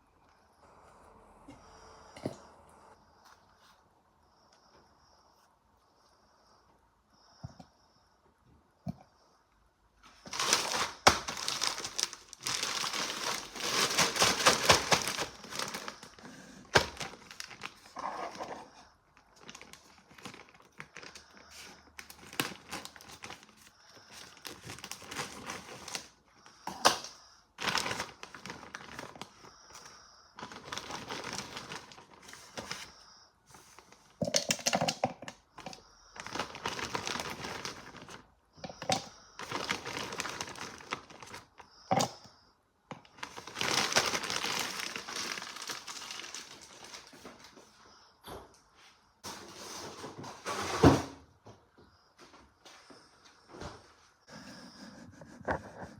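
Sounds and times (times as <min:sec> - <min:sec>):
packaging crinkling and tearing: 0:10.2 - 0:33.0, 0:35.6 - 0:42.0, 0:43.1 - 0:47.5.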